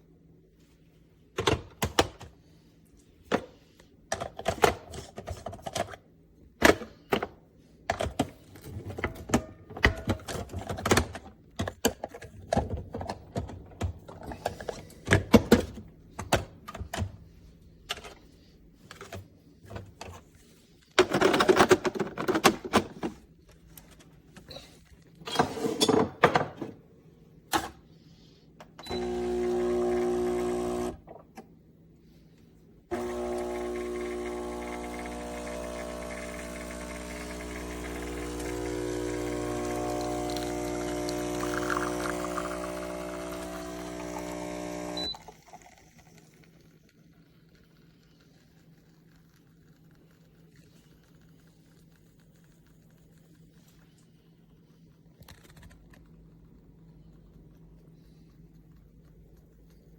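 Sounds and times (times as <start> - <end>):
espresso machine pump buzzing: 28.9 - 31.1, 32.9 - 46.0.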